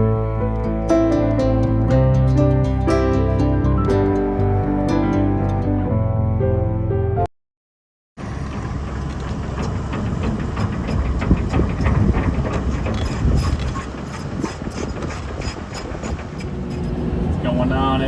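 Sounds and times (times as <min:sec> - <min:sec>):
clanks and knocks: 0:08.2 - 0:17.4
excavator engine rumble: 0:08.2 - 0:18.0.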